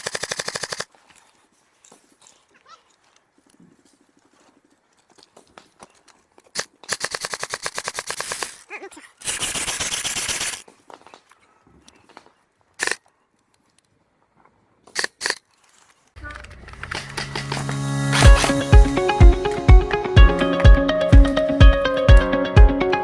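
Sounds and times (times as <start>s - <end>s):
airsoft guns firing: 0.0s - 0.9s, 6.6s - 8.6s, 9.2s - 10.6s.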